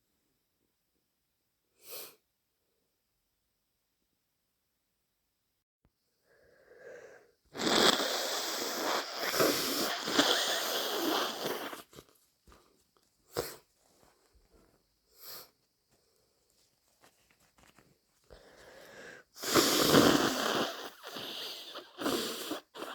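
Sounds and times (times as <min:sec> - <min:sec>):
person sniffing: 0:01.8 - 0:02.2, 0:06.6 - 0:12.1, 0:13.3 - 0:13.7, 0:15.2 - 0:15.6, 0:18.3 - 0:22.9
person blowing nose: 0:07.5 - 0:12.1, 0:13.3 - 0:13.6, 0:18.4 - 0:22.9.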